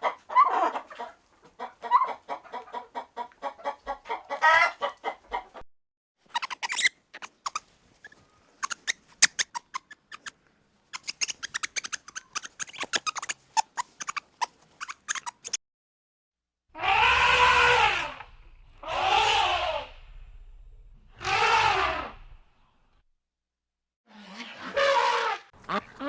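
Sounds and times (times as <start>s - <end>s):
farm animal calling: 6.4s - 7.6s, 8.6s - 10.3s, 11.0s - 15.6s.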